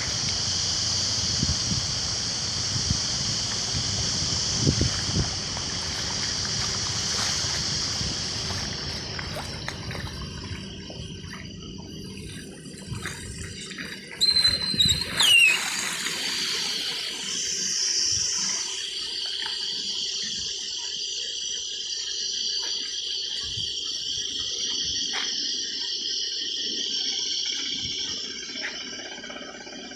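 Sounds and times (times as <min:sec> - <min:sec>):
rushing floodwater: 0:12.2 - 0:17.4
high whistle sliding down: 0:14.2 - 0:19.0.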